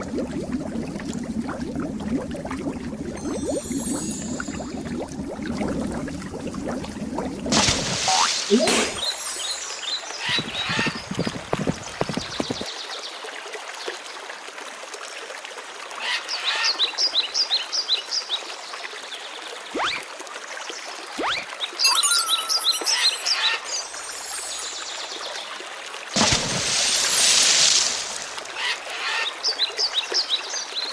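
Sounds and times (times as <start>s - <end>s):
trickle of running water: 0.0s - 30.9s
cartoon bird-like chirps: 19.8s - 20.0s, 21.2s - 24.2s.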